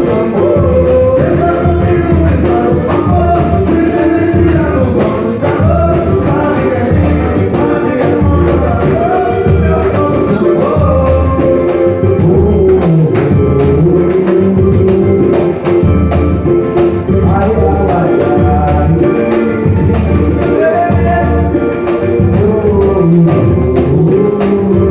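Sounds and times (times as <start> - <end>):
heavy low drum beats: 0.0 - 24.9
quick percussion strokes: 0.0 - 24.9
voices singing: 0.0 - 24.9.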